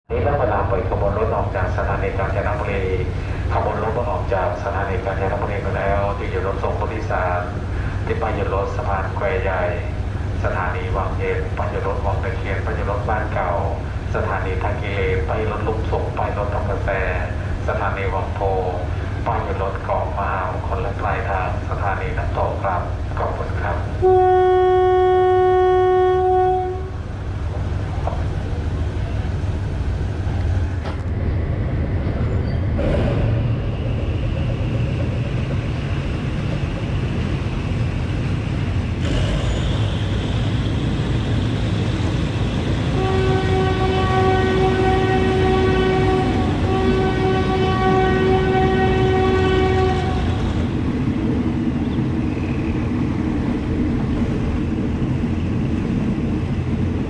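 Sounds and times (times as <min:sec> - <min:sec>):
train rumbling: 0:00.1 - 0:57.0
train horn blast: 0:24.0 - 0:27.1, 0:42.9 - 0:50.8.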